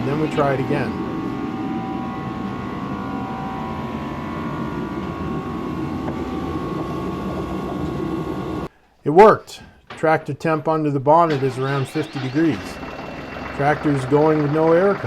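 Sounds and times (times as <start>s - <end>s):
tractor diesel engine running: 11.3s - 15.0s.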